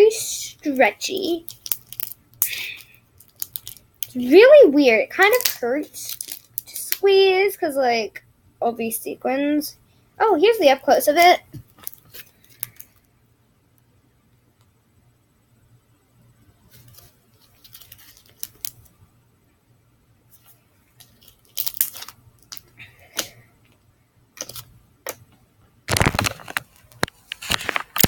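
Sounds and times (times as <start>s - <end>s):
slime squishing: 0.5s - 7.1s, 21.0s - 23.4s.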